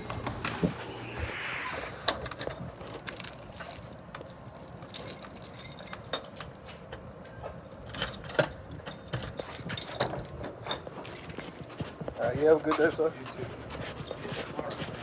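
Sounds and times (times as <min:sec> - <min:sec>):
light clicks and metallic clinks: 0:02.9 - 0:12.9, 0:13.9 - 0:14.8.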